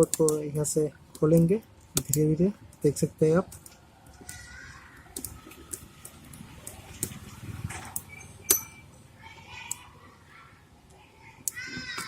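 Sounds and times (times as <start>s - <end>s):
tools clicking on phone parts: 7.9s - 8.9s.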